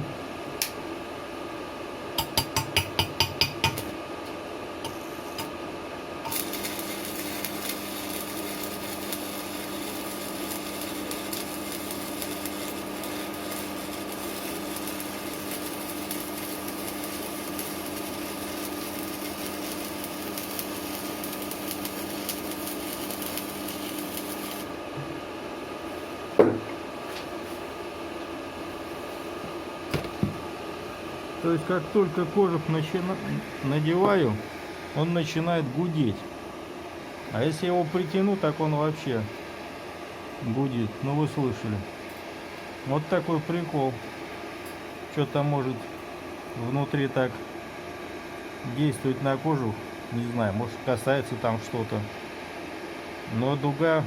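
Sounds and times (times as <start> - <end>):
welder hum: 0.0 - 54.0
welding arc hiss: 2.2 - 5.6, 6.2 - 24.8
knock: 26.4 - 26.7.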